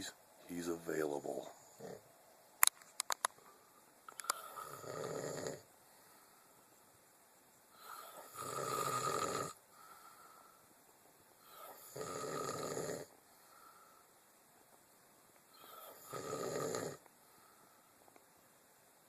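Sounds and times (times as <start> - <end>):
quiet breathing: 3.3 - 18.3
man snoring: 4.3 - 5.7, 7.8 - 9.6, 11.4 - 13.1, 15.5 - 17.1.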